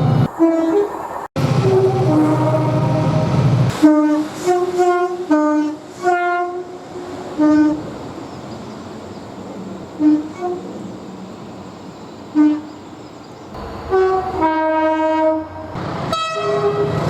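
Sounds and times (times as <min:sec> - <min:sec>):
train horn blasts: 0:00.4 - 0:07.9, 0:10.0 - 0:10.7, 0:12.4 - 0:12.7, 0:13.6 - 0:17.0
hiss: 0:03.7 - 0:12.8.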